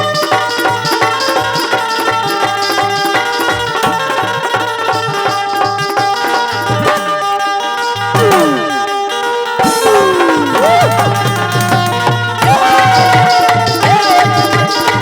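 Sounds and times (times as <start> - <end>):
held melodic tones: 0.0 - 15.0
quick steady drum beat: 9.6 - 15.0.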